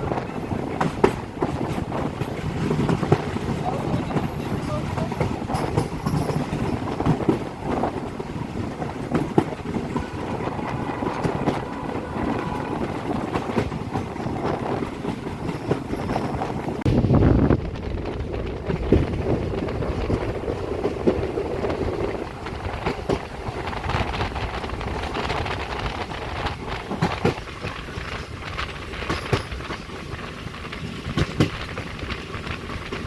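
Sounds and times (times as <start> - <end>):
train rumbling on rails: 0.0 - 33.0
wind on microphone: 0.0 - 33.0
rattling clicks of wheels: 0.1 - 10.0, 17.7 - 33.0.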